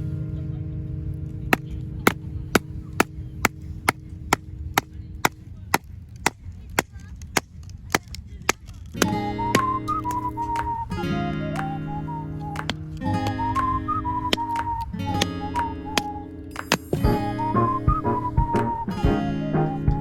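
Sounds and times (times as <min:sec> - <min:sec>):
axe chopping wood: 0:01.5 - 0:09.1.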